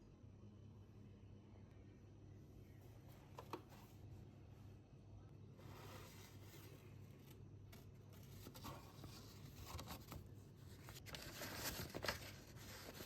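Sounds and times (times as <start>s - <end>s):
rustling and handling noises: 5.4s - 13.0s.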